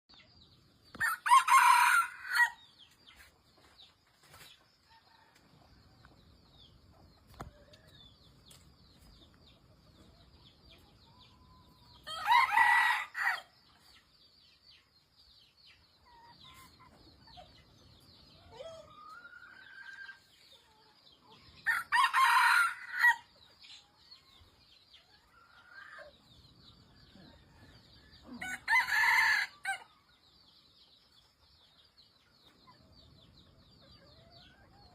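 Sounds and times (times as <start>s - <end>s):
rooster crowing: 1.0s - 2.6s, 12.0s - 13.5s, 21.7s - 23.3s, 28.4s - 29.9s.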